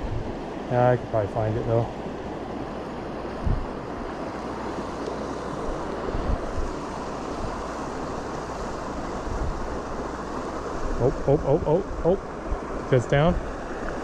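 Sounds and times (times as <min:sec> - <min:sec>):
wind bumps on microphone: 0:00.0 - 0:00.4, 0:03.3 - 0:03.8, 0:06.0 - 0:07.7, 0:09.2 - 0:09.9
river water rushing: 0:00.0 - 0:14.0.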